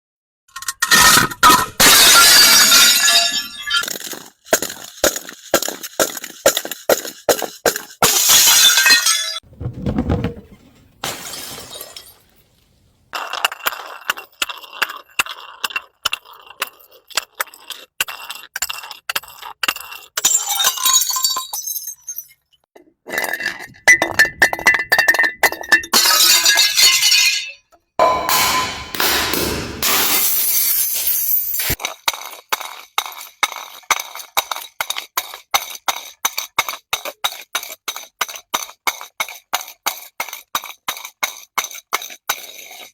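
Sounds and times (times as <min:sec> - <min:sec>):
glass bottles being crushed: 0:00.6 - 0:12.6, 0:20.2 - 0:22.5, 0:23.1 - 0:35.4.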